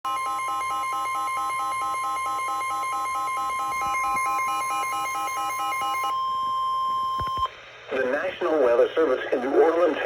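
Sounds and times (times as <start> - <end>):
rapid electronic beeping: 0.1 - 6.2.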